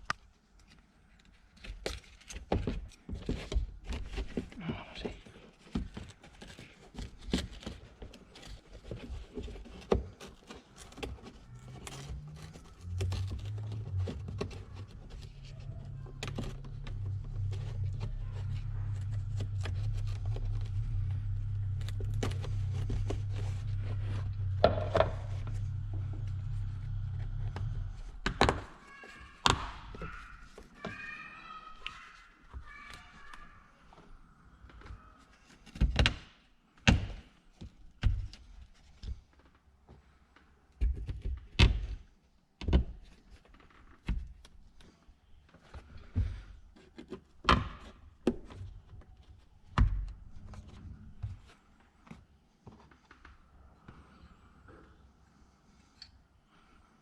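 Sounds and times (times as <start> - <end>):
steady low hum: 11.4 - 28.8
knocks and thunks of parts: 21.4 - 28.8.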